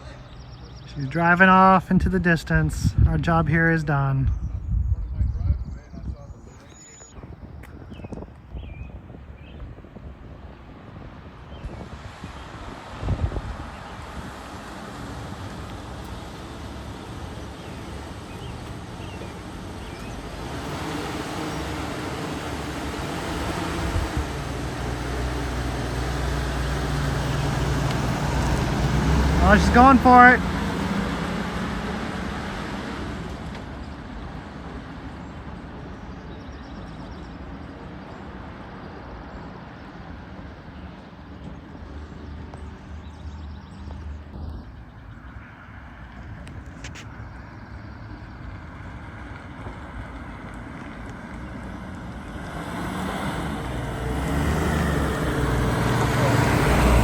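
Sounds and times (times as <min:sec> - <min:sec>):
wind noise: 0:01.8 - 0:29.7
distant car engine running: 0:07.5 - 0:57.0.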